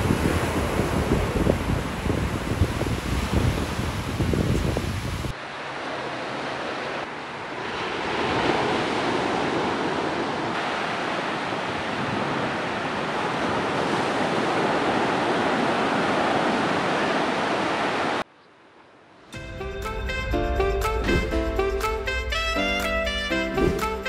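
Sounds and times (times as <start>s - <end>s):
wind buffeting microphone: 0.0s - 5.3s
ocean surf breaking: 0.0s - 18.3s
music: 19.4s - 24.0s.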